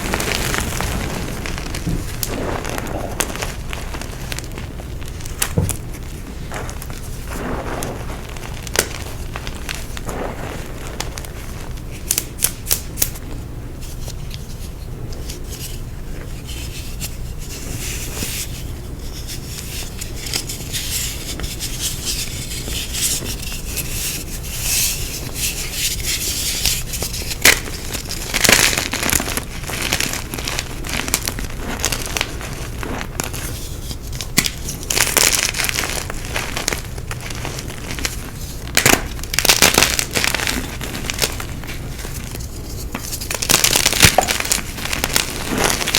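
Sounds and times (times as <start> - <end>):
chalk blocks crunching: 19.6 - 45.9.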